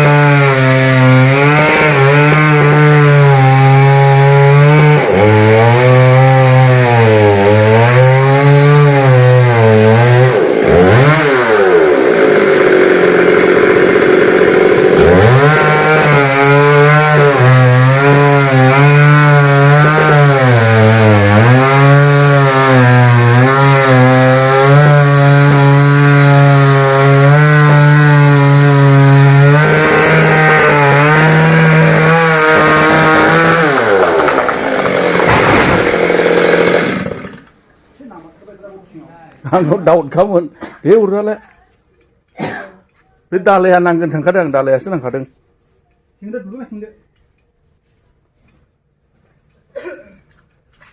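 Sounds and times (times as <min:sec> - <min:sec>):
chainsaw cutting wood: 0:00.0 - 0:37.6.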